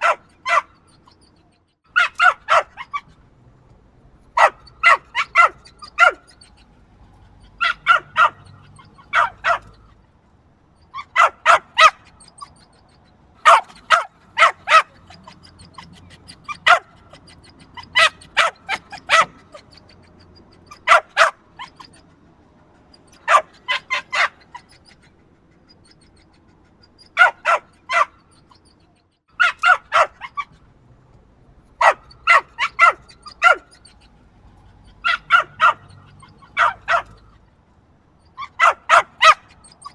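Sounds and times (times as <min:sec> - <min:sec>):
small dog barking: 0:00.0 - 0:01.2, 0:01.9 - 0:03.2, 0:04.3 - 0:06.7, 0:07.4 - 0:10.0, 0:10.9 - 0:12.7, 0:13.4 - 0:22.1, 0:23.0 - 0:25.0, 0:27.0 - 0:28.6, 0:29.4 - 0:30.6, 0:31.8 - 0:34.1, 0:34.9 - 0:37.4, 0:38.3 - 0:39.9.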